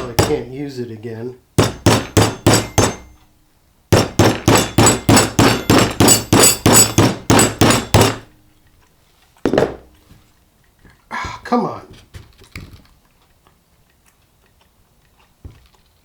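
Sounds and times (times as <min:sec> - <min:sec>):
hammer blows on metal: 0:00.0 - 0:00.6, 0:01.6 - 0:03.2, 0:04.0 - 0:08.4.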